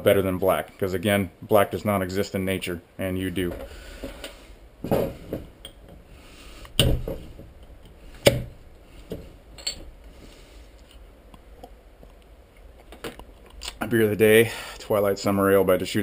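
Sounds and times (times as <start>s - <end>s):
hard objects knocking and clinking: 6.8s - 9.9s.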